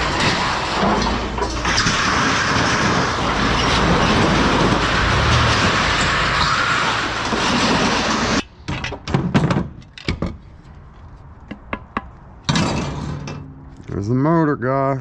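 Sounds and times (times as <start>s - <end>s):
knocks and clanks: 0.0s - 10.4s
loud steady rushing noise: 3.1s - 7.7s.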